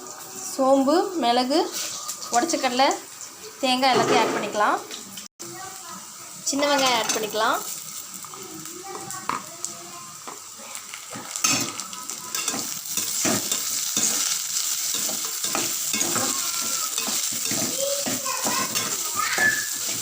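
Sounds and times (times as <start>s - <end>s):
shallots sizzling in oil: 0.0s - 20.0s
spoon scraping pan: 11.1s - 20.0s.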